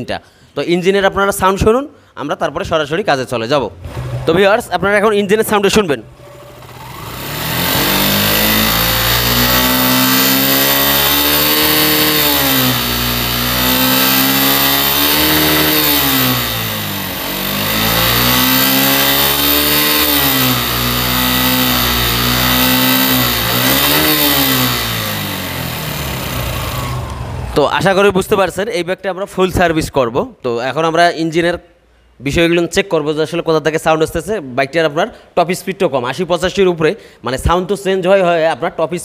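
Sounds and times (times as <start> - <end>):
motorcycle engine revving: 6.1 - 28.2.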